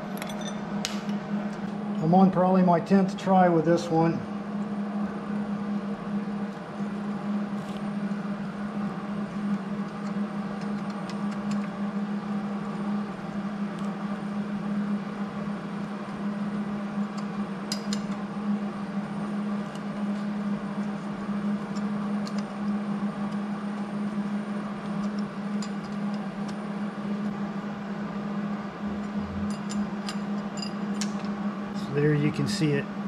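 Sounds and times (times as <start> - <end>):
machine hum: 0.0 - 33.0.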